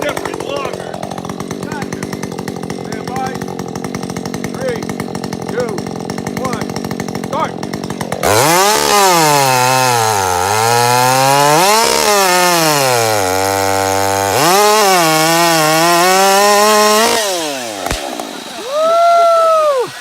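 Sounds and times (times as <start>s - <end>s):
chainsaw cutting log: 0.0s - 20.0s
sharp pop: 17.8s - 18.5s.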